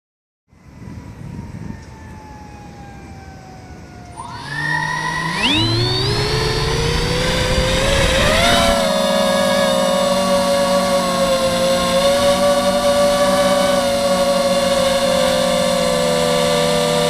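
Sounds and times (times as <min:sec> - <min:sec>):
quadcopter motors whining: 0:01.2 - 0:17.0.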